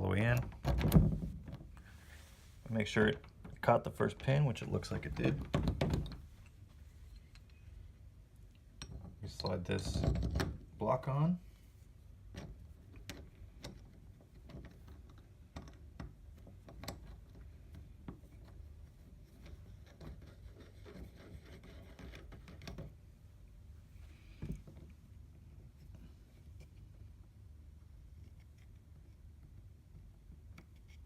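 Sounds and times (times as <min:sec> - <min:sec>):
faint clicks of metal parts: 0:02.7 - 0:10.6, 0:11.5 - 0:23.1.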